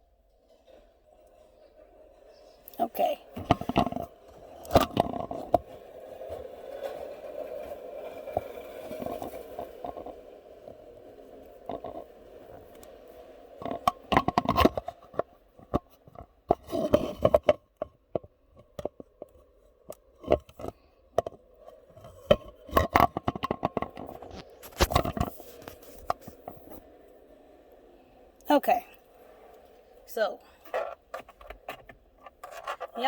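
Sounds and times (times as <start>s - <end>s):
hand tools clicking and scraping: 22.0s - 26.8s, 30.5s - 33.0s.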